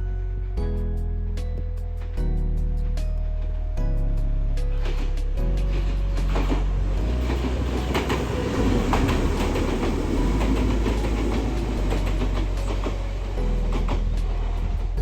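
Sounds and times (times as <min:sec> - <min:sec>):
electric train rumbling past: 0:05.7 - 0:15.0
wheels clacking over rail joints: 0:05.7 - 0:15.0.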